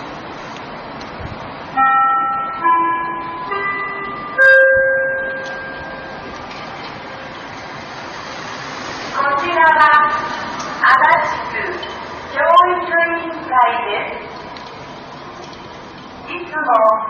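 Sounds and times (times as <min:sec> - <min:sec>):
steady background rush: 0:00.0 - 0:17.0
loudspeaker chime: 0:01.8 - 0:06.3.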